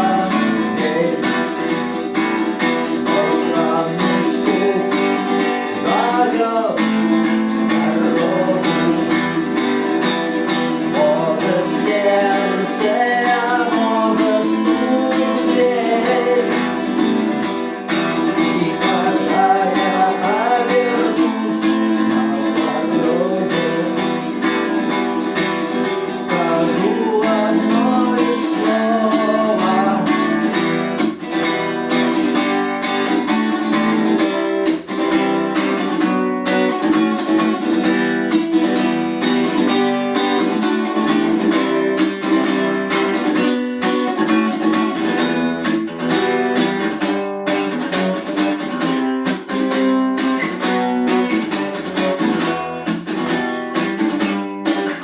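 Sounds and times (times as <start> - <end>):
man singing: 0.0 - 31.4
acoustic guitar strumming: 0.0 - 55.0.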